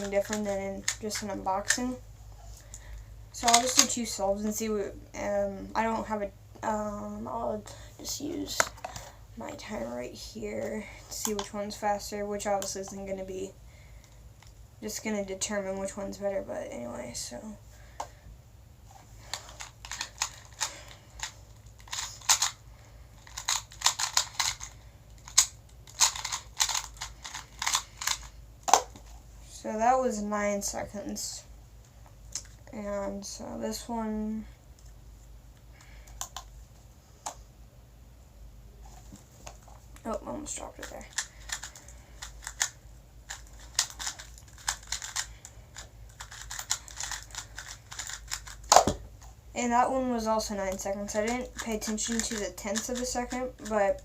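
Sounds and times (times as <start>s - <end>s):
speed cube plastic clicks: 3.4s - 4.0s, 19.3s - 22.6s, 23.2s - 29.0s, 36.0s - 36.5s, 40.8s - 49.0s, 50.7s - 54.0s.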